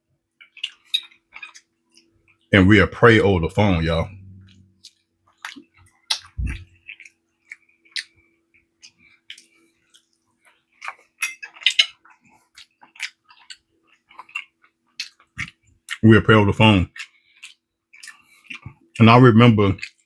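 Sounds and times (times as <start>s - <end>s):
mouth sounds: 6.3s - 6.7s
low thump: 6.4s - 6.7s.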